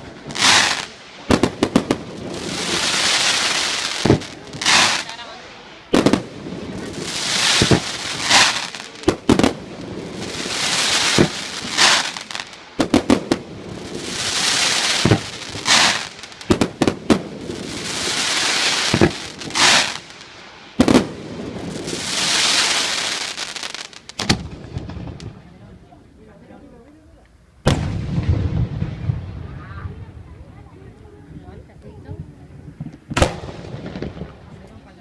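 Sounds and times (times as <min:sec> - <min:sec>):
firework shells bursting: 0:00.0 - 0:05.2, 0:06.0 - 0:20.2
crackling firework hiss: 0:00.0 - 0:35.0.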